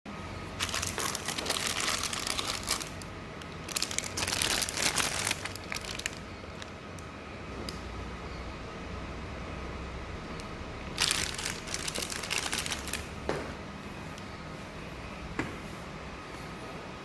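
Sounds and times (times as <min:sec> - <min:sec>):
packaging crinkling: 0:00.6 - 0:06.8, 0:10.8 - 0:13.2.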